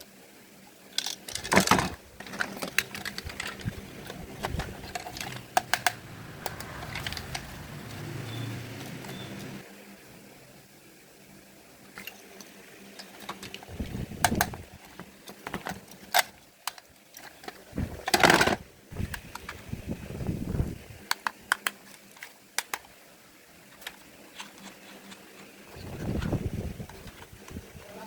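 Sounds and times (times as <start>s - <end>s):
clicks of small hard parts: 1.0s - 7.5s, 21.0s - 22.9s
loud rushing scrape: 3.5s - 9.6s.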